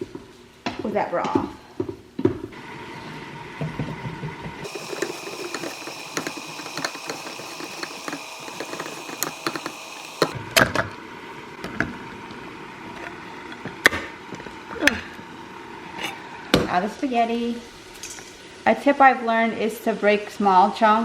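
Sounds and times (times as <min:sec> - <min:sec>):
faint steady whine: 0:04.6 - 0:19.6
utensil scraping against pot: 0:04.7 - 0:10.4.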